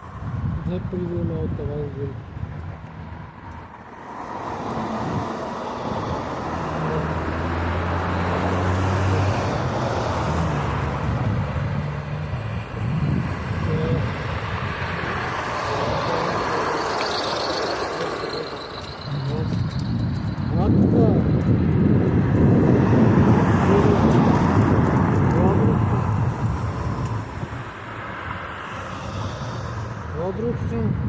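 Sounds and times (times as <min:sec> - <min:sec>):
road and tyre noise: 0:00.0 - 0:31.0
motor vehicle running: 0:04.6 - 0:30.6.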